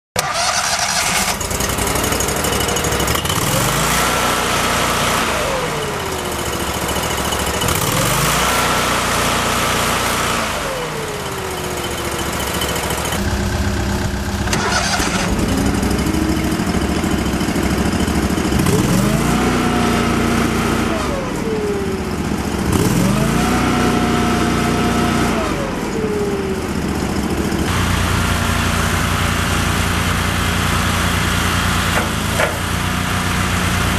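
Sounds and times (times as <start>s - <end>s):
loader engine revving: 0.2s - 33.9s.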